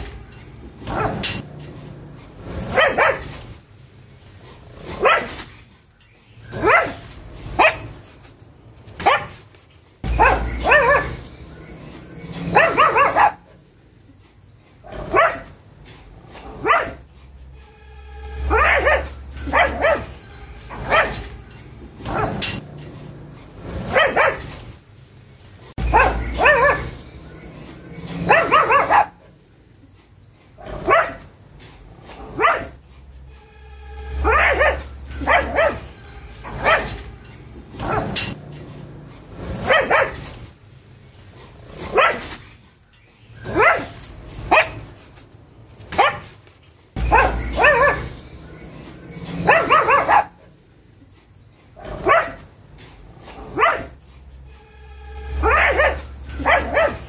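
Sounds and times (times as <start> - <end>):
dog barking: 0.8 - 1.4, 2.6 - 3.4, 4.8 - 5.4, 6.5 - 8.0, 9.0 - 9.4, 10.0 - 11.6, 12.4 - 13.6, 14.8 - 15.6, 16.4 - 17.0, 18.4 - 21.3, 22.0 - 22.6, 23.8 - 24.6, 25.8 - 27.1, 28.1 - 29.3, 30.6 - 31.3, 32.2 - 32.8, 34.2 - 37.1, 37.7 - 38.4, 39.6 - 40.3, 41.9 - 42.3, 43.4 - 44.9, 45.9 - 46.3, 47.0 - 48.5, 49.3 - 50.5, 51.8 - 52.5, 53.3 - 54.0, 55.4 - 57.0.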